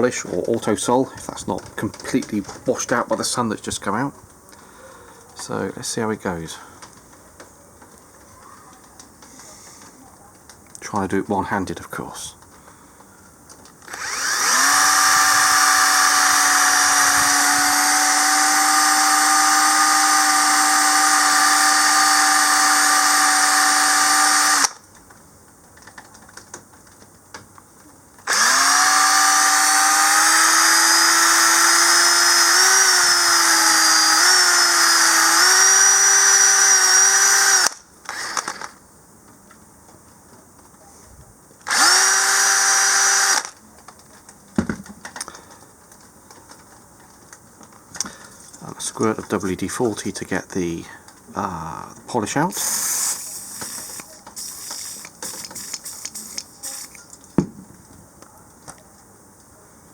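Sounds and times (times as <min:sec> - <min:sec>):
drill whining: 0:13.8 - 0:24.8, 0:28.2 - 0:38.8, 0:41.6 - 0:43.6, 0:52.5 - 0:57.2.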